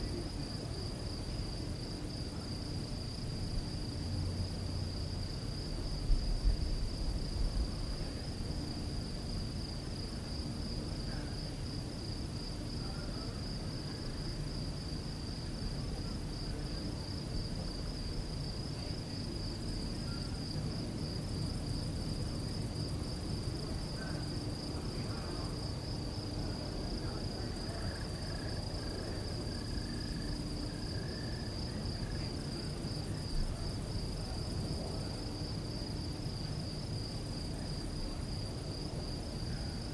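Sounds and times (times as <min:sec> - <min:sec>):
crickets trilling: 0:00.0 - 0:39.9.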